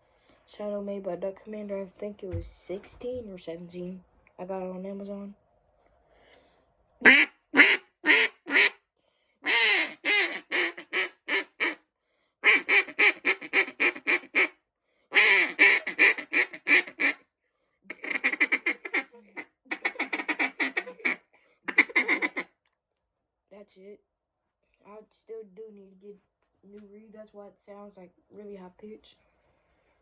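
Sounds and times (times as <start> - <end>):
duck call quacks: 7.0 - 8.8, 9.4 - 11.8, 12.4 - 17.2, 17.9 - 22.5.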